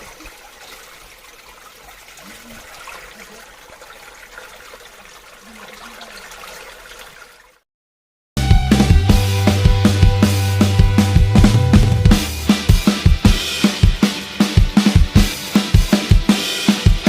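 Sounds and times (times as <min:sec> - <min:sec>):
running water: 0:00.0 - 0:07.6.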